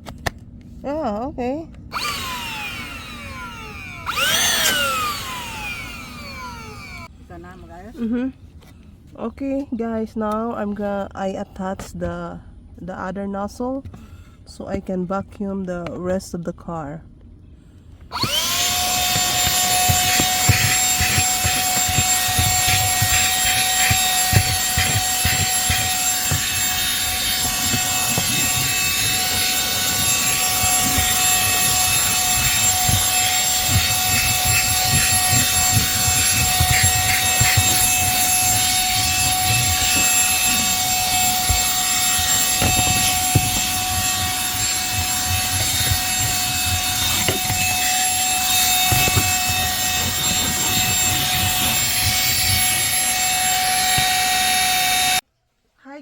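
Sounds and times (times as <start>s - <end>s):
handheld vacuum running: 1.9s - 7.1s, 18.1s - 55.2s.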